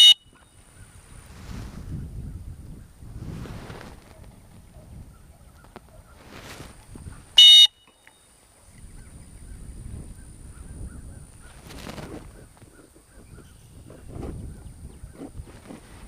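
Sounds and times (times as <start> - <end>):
low wind rumble on microphone: 0.0 - 7.4, 8.6 - 16.0
dog whistle blast: 7.4 - 7.8.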